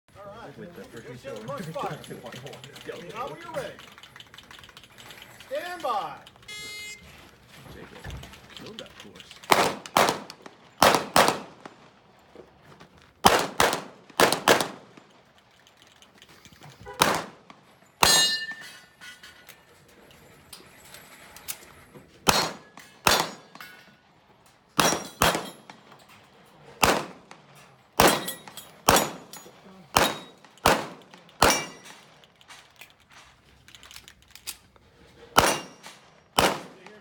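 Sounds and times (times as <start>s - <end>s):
pistol shots: 9.5s - 11.9s, 13.2s - 15.0s, 16.9s - 18.4s, 22.2s - 23.6s, 24.8s - 25.8s, 26.8s - 32.2s, 35.4s - 37.0s
steel targets clanging: 17.6s - 24.1s, 24.8s - 26.7s, 27.4s - 32.7s, 35.2s - 37.0s.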